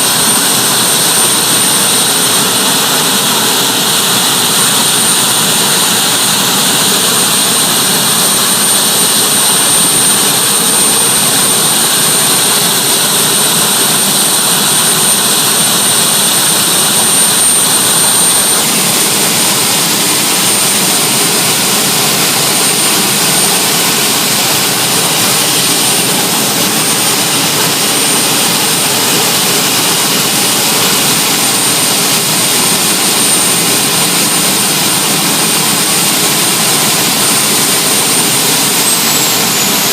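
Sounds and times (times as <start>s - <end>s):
gas turbine engine whine: 0.0s - 39.9s
loud dense rush: 0.0s - 39.9s.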